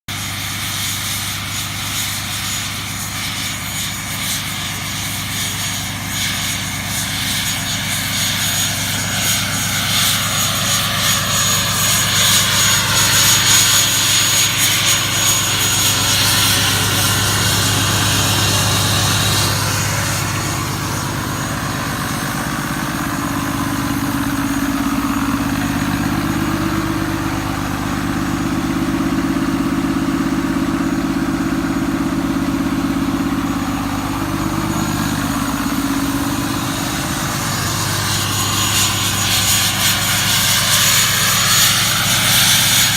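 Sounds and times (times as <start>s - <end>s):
high-pitched turbocharger whistle: 0.1s - 42.9s
diesel engine idling: 8.7s - 42.9s.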